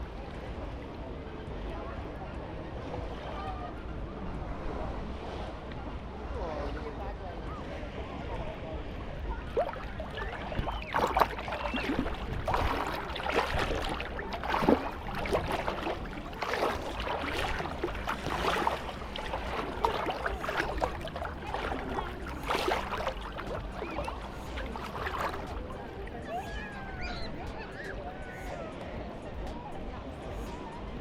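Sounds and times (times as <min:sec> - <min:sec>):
small waves splashing on shore: 0:08.8 - 0:26.8.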